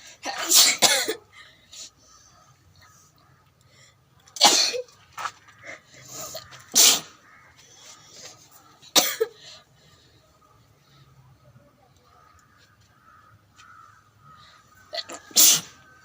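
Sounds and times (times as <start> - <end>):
person sneezing loudly: 0.2 - 1.3, 6.1 - 7.2, 15.0 - 15.8.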